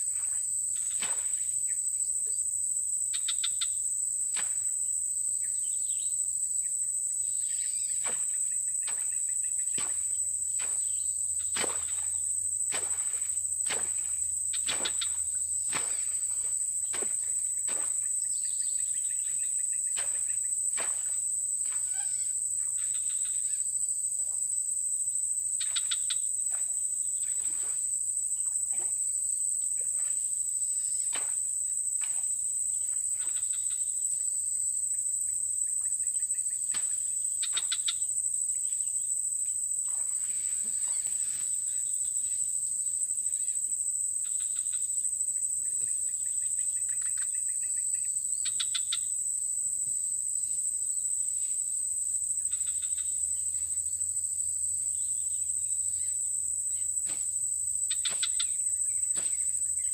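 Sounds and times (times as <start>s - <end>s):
insects droning: 0.0s - 59.9s.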